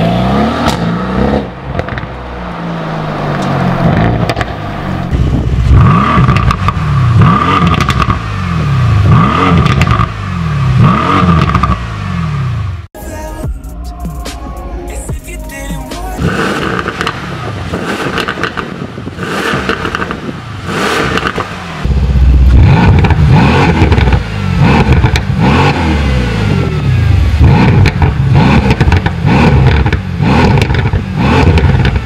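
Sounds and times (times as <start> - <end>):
car engine revving: 0.0 - 12.9, 15.8 - 32.0.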